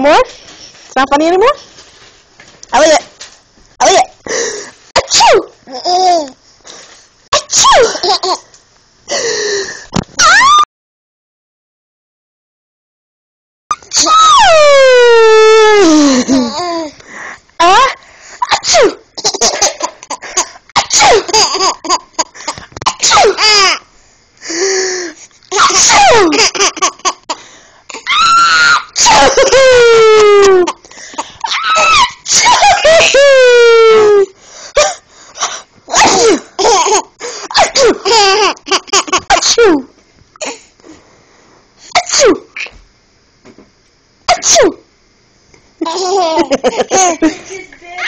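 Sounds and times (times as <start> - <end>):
adult pretend sneezing: 5.0 - 5.5, 7.3 - 7.9, 22.8 - 23.4, 41.9 - 42.8, 44.3 - 44.8
person sneezing: 7.3 - 8.0, 17.8 - 19.0, 20.4 - 21.3, 22.4 - 23.6, 34.8 - 36.5, 41.9 - 42.8
baby giggling: 19.2 - 23.8, 36.0 - 39.5, 45.8 - 47.6.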